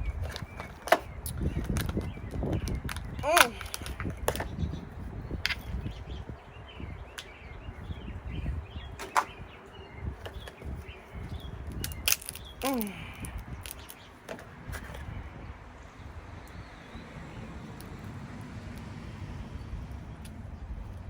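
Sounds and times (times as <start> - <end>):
crab shells cracking: 2.8 - 4.4, 11.8 - 14.0.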